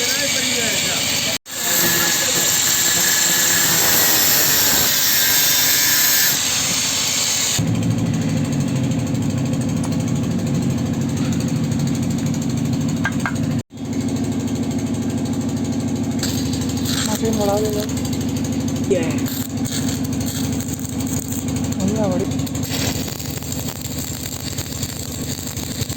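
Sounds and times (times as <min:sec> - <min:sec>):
loud harsh hiss: 0:00.0 - 0:07.6
tractor engine running: 0:07.6 - 0:25.9.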